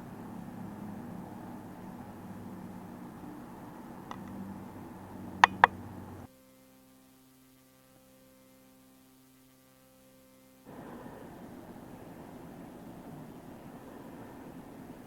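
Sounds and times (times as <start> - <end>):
faint electrical mains hum: 0.0 - 15.0
sharp loud clicks: 5.4 - 5.8.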